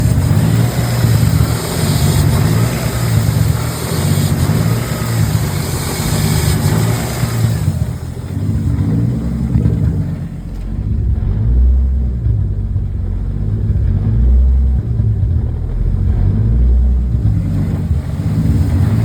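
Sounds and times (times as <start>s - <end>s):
high hiss: 0.0s - 9.5s
car engine idling roughly: 0.0s - 19.0s.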